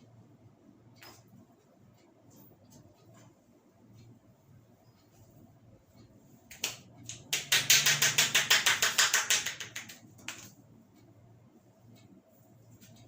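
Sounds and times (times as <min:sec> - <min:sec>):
hand claps: 0:06.5 - 0:10.5
hands tapping on a head: 0:06.5 - 0:10.5.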